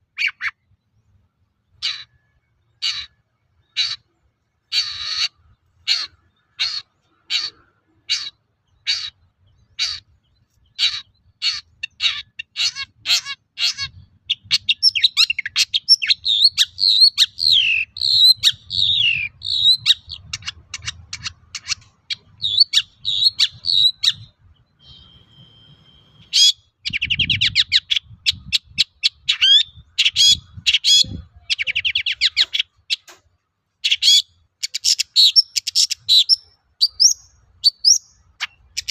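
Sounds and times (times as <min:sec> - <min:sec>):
shrike singing: 0:13.6 - 0:32.7.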